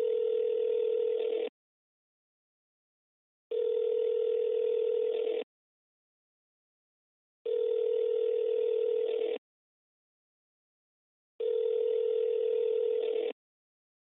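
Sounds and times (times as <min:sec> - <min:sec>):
phone ringing tone: 0:00.0 - 0:01.5, 0:03.5 - 0:05.5, 0:07.5 - 0:09.4, 0:11.4 - 0:13.4.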